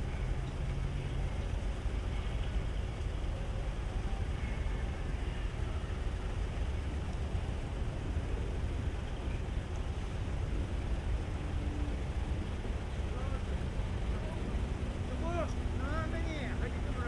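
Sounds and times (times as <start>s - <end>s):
vehicle engines rumbling: 0.0s - 17.0s.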